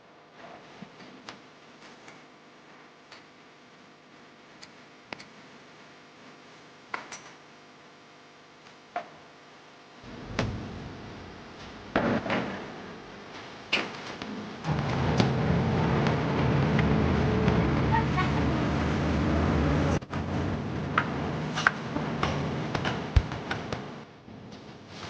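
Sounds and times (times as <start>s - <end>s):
heavy thuds: 10.0s - 13.7s
low rumble: 10.0s - 13.7s, 14.5s - 22.7s.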